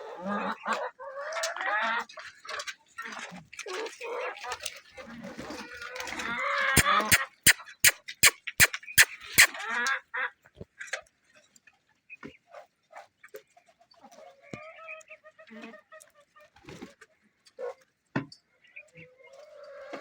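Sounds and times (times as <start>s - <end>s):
hens clucking softly: 12.2s - 17.8s, 18.6s - 20.0s.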